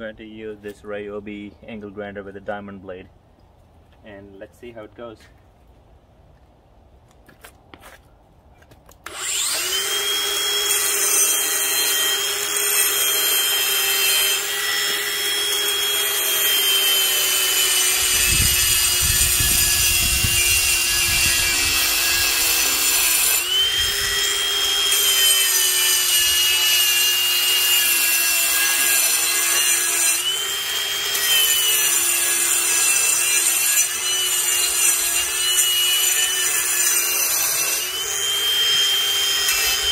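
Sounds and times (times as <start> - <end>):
angle grinder grinding concrete: 9.1 - 39.9.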